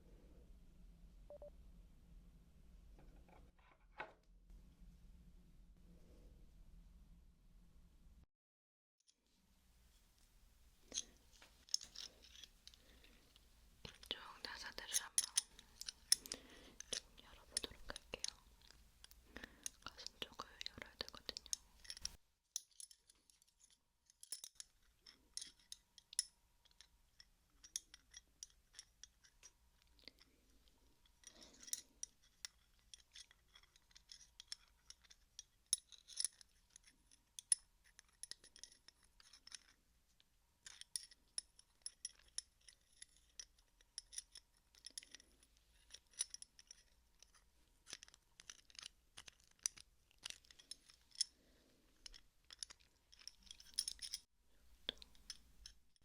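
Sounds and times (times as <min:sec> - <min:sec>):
metal wrench clicking and scraping: 0:10.9 - 0:12.8, 0:14.9 - 0:18.0, 0:21.4 - 0:26.8, 0:31.1 - 0:39.8, 0:40.6 - 0:51.3, 0:52.0 - 0:54.3.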